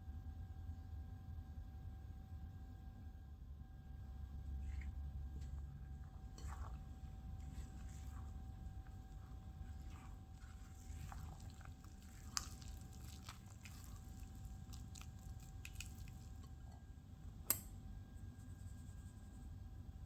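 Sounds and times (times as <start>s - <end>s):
soft squishing: 4.0s - 20.0s.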